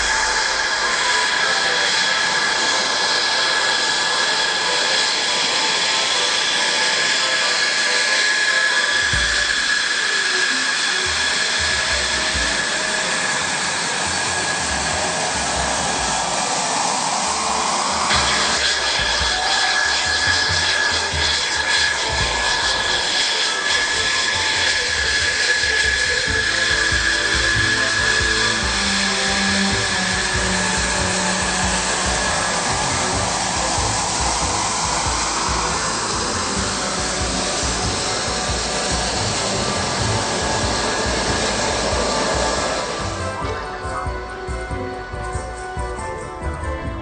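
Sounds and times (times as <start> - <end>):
jet engine whine and roar: 0.0 - 47.0
low rumble: 23.8 - 46.0.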